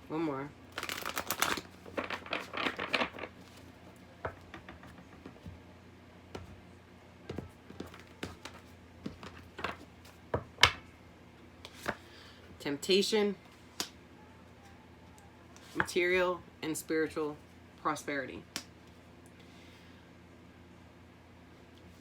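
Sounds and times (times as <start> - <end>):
cards tapping and flicking: 0.8 - 3.3, 4.2 - 5.5, 7.3 - 10.8
cards shuffling: 0.8 - 5.5, 7.3 - 10.2.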